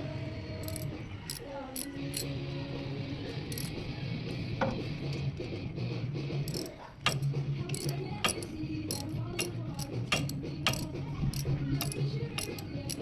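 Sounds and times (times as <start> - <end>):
sharp metal clicks: 0.6 - 2.6, 3.2 - 3.9, 6.3 - 13.0.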